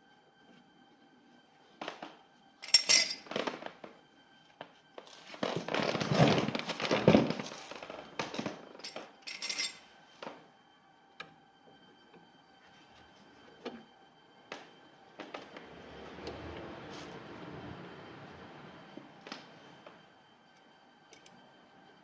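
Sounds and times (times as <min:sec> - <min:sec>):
metal parts clinking and knocking: 0:02.6 - 0:03.3, 0:08.4 - 0:09.8.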